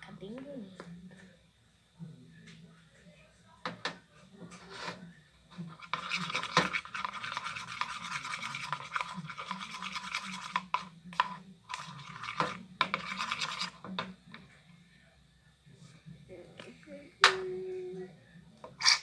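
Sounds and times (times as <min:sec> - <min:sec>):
scraping stirring in plastic pot: 0:04.6 - 0:14.1, 0:18.7 - 0:19.0.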